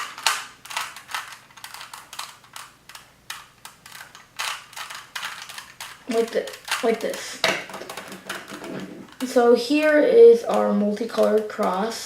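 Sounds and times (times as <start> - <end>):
puzzle cube layers clicking: 0.0 - 8.2.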